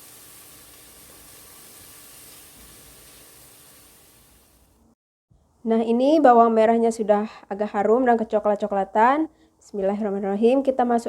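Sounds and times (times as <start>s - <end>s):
shallots sizzling in oil: 0.0s - 4.8s.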